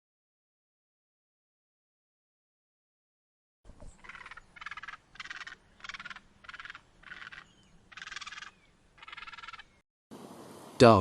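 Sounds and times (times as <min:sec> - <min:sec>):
egret harsh rasping croaks: 0:04.0 - 0:09.7.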